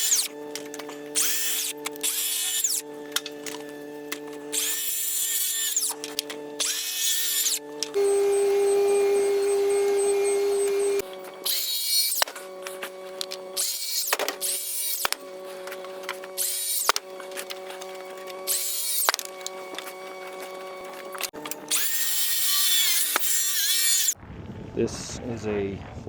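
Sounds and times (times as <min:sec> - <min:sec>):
power drill whining in bursts: 0:00.0 - 0:24.2.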